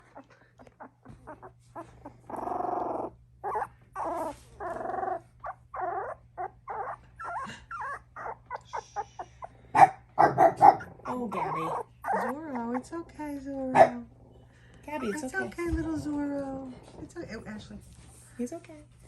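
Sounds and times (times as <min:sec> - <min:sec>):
puppy whimpering and crying: 0:00.0 - 0:09.6, 0:10.8 - 0:13.0, 0:14.9 - 0:15.6.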